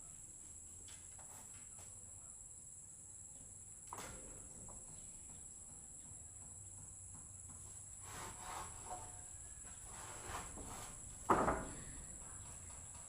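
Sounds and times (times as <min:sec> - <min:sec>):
crickets trilling: 0:00.0 - 0:13.0
faint knocks: 0:10.4 - 0:13.0.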